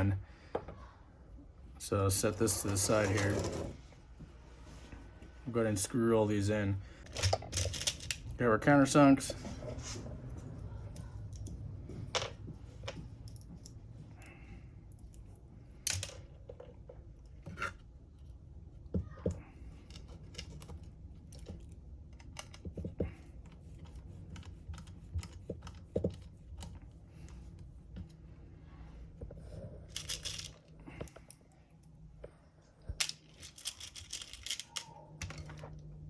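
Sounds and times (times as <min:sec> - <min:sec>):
small parts clicking and tapping: 0:07.0 - 0:08.3, 0:15.8 - 0:18.3, 0:18.9 - 0:23.2, 0:29.9 - 0:32.0, 0:32.9 - 0:35.9.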